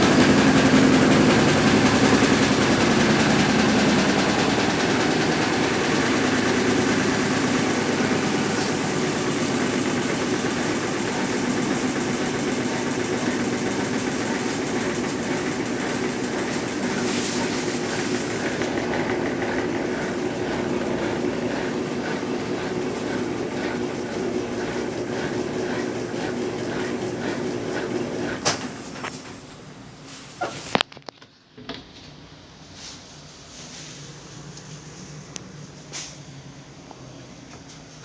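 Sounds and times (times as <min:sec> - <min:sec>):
rhythmic clatter: 0:00.0 - 0:28.7
washing machine running: 0:00.0 - 0:30.8.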